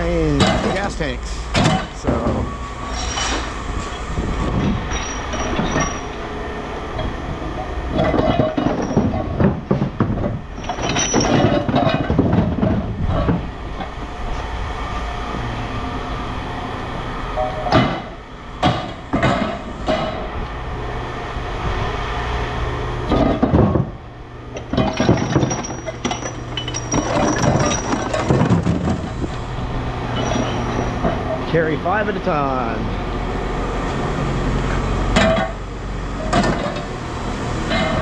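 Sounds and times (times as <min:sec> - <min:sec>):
scrap metal clanking and scraping: 0:00.2 - 0:06.2, 0:06.9 - 0:13.9, 0:17.4 - 0:20.3, 0:23.1 - 0:24.0, 0:24.6 - 0:31.7, 0:34.7 - 0:35.6, 0:36.2 - 0:37.0, 0:37.6 - 0:38.0
sharp metal clangs: 0:02.9 - 0:03.5.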